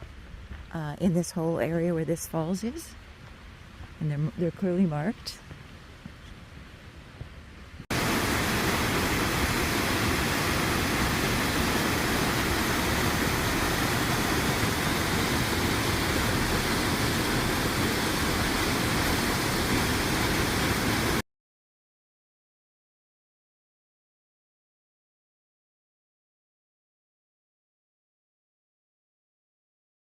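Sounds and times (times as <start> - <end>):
waterfall rushing: 7.9 - 21.2.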